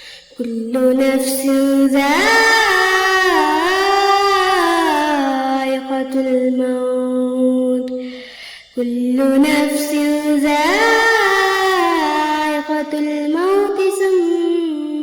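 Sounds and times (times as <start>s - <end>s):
person chanting recitation: 0.3s - 8.0s, 8.8s - 15.0s.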